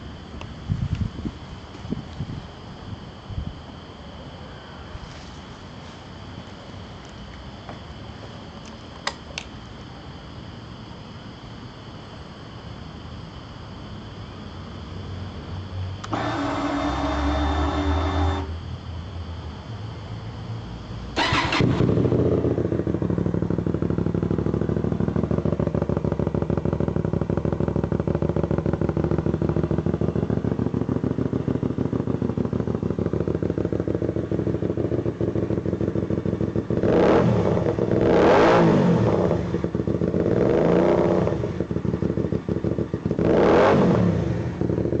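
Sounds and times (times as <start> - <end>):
motorcycle engine idling and revving: 13.6 - 45.0.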